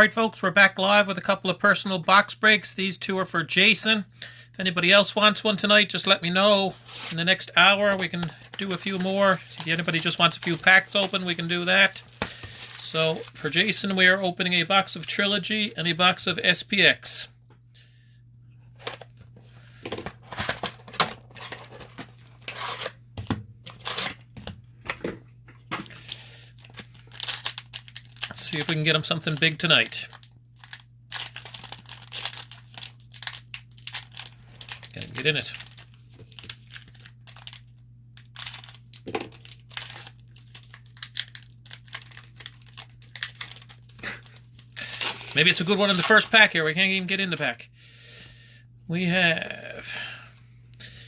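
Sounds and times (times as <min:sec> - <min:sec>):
low steady hum: 0:00.0 - 0:51.0
packaging being torn open: 0:07.9 - 0:13.4, 0:26.0 - 0:46.3.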